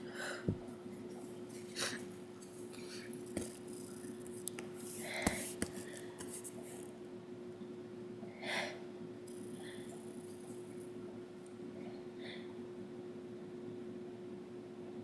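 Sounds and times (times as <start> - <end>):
person breathing quietly: 0.0 - 0.6, 4.8 - 6.4
steady low hum: 0.0 - 15.0.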